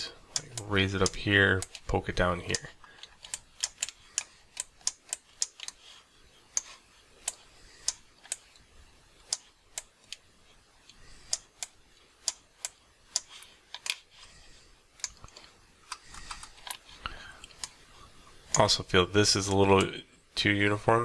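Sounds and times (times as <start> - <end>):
mouse and keyboard clicks: 2.5 - 5.8, 10.8 - 14.1, 15.0 - 16.8.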